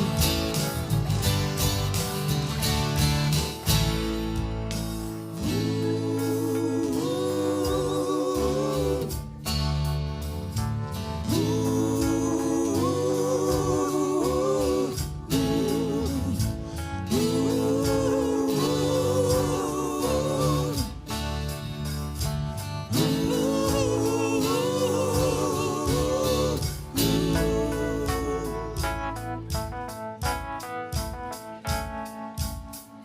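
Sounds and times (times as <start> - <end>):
live band playing: 0.0 - 6.8, 20.7 - 33.0.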